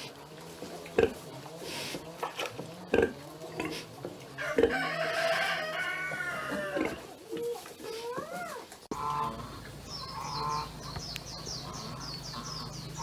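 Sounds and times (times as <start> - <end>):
rooster crowing: 4.4 - 7.0.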